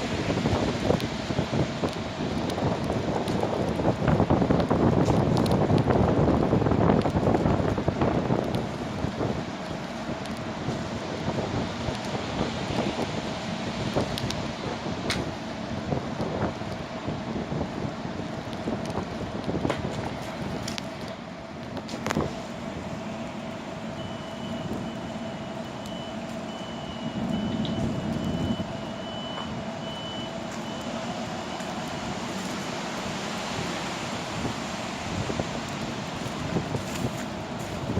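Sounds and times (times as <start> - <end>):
wind buffeting the microphone: 0.0 - 23.1, 27.0 - 29.8, 31.8 - 37.9
electronic warning beeps: 23.9 - 32.4.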